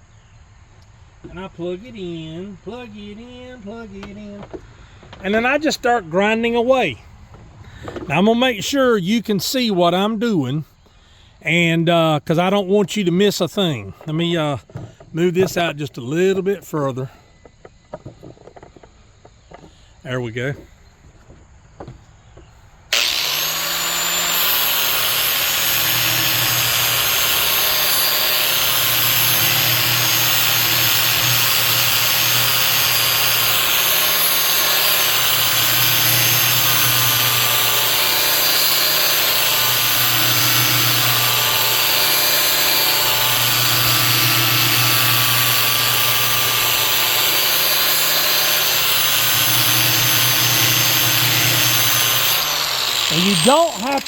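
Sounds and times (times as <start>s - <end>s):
angle grinder grinding steel: 22.9s - 54.0s.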